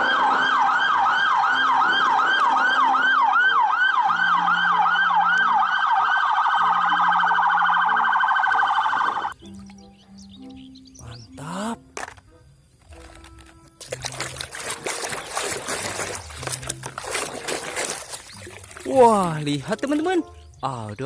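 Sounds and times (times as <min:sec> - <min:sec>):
police siren wailing: 0:00.0 - 0:09.4.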